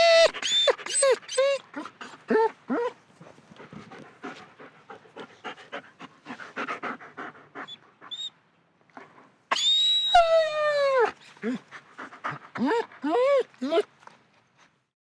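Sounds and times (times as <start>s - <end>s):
dog whining: 0.0s - 3.0s, 7.7s - 8.3s, 9.5s - 11.7s, 12.6s - 13.9s
dog panting: 3.2s - 8.3s, 11.4s - 14.8s.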